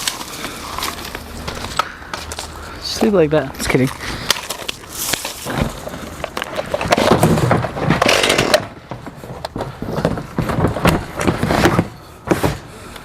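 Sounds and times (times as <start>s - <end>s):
wood cracking and knocking: 4.3s - 12.6s.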